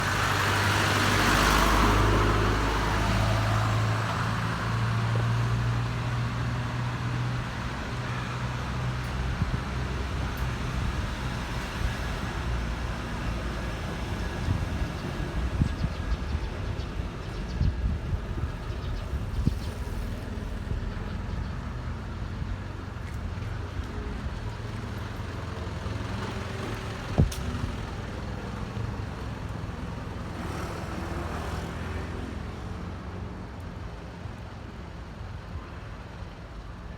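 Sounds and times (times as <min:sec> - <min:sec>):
truck engine humming: 0:00.0 - 0:30.2.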